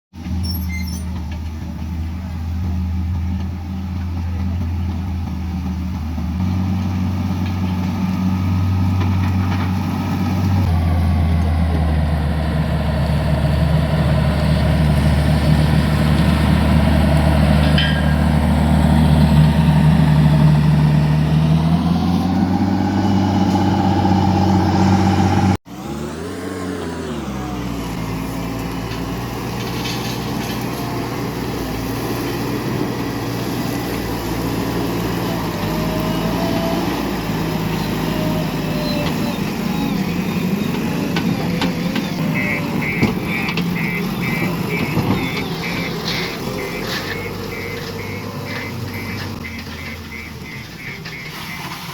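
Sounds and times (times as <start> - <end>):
heavy diesel engine droning: 0.2 - 51.9
engine pitch rising and falling: 8.4 - 29.0, 34.1 - 51.9.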